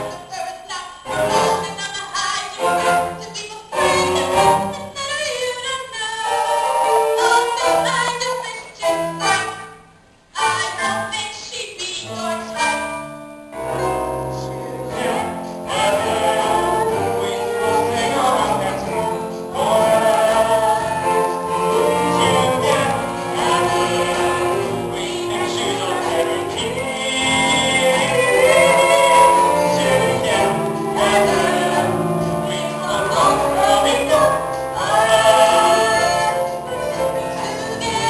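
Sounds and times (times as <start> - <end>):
instrumental accompaniment: 2.6 - 5.1, 12.0 - 38.0
singers performing: 13.8 - 38.0.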